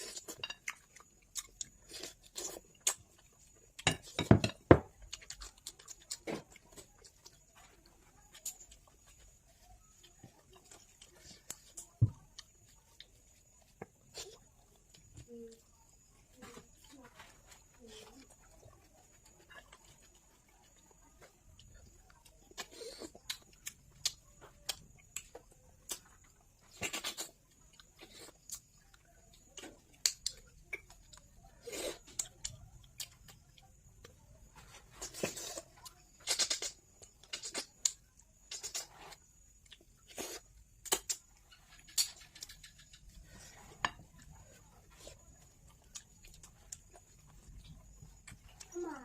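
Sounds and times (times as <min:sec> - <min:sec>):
chewing and mouth sounds: 0:00.0 - 0:04.2, 0:04.9 - 0:49.0.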